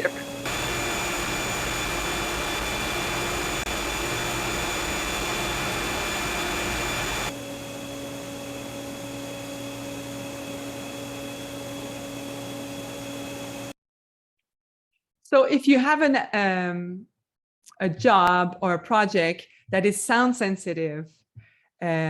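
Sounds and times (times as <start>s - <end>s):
chiller low hum: 0.0s - 13.7s
chiller rushing with high whines: 0.0s - 13.7s.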